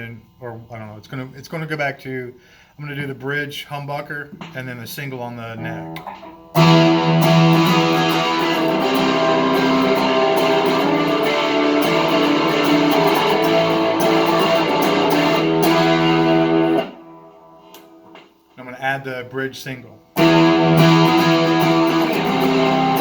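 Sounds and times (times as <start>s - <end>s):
overdriven electric guitar chords: 5.5s - 18.4s, 20.2s - 23.0s.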